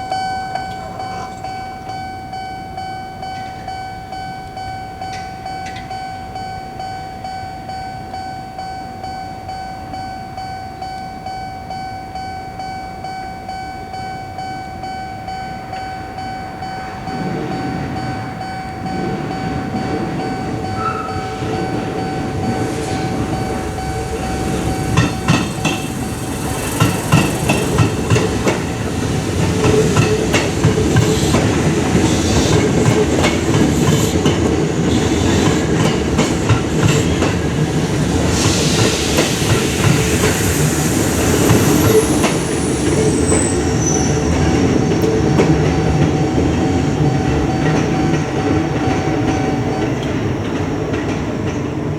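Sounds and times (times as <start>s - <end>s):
level crossing warning bell: 0.0s - 51.6s
train rumble: 0.0s - 51.9s
train wheels clacking on rails: 0.0s - 51.9s.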